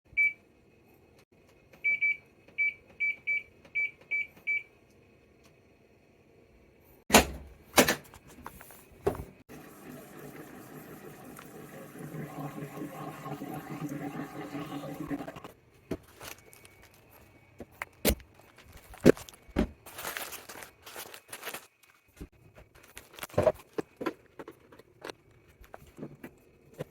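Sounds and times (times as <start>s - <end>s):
washing machine clunks: 7.1s - 8.1s
washing machine humming: 7.1s - 15.8s.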